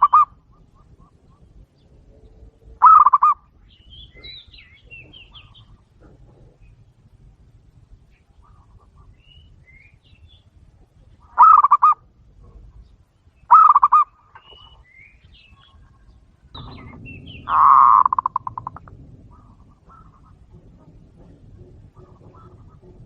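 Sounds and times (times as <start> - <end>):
doves cooing: 0.0 - 7.2, 11.1 - 12.8, 13.5 - 14.8, 15.4 - 23.0.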